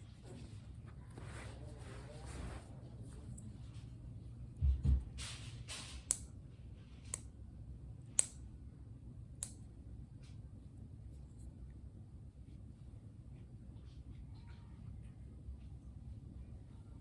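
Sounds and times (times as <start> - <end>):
nail clippers clicking: 8.2 - 8.4, 9.4 - 9.6.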